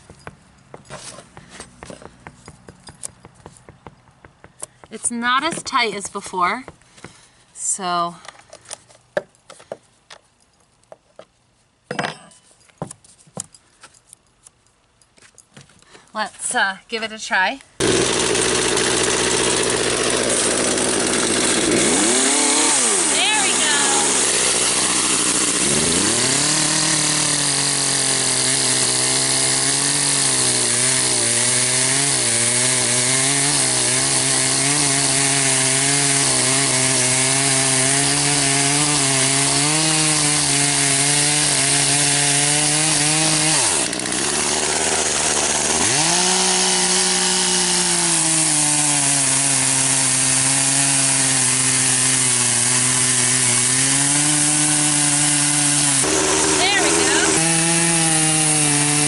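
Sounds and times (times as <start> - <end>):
two-stroke chainsaw revving: 17.8 - 59.0.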